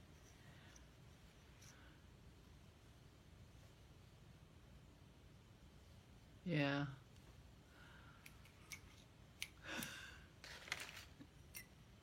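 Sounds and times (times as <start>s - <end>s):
soft yarn rustles: 0.0s - 9.2s.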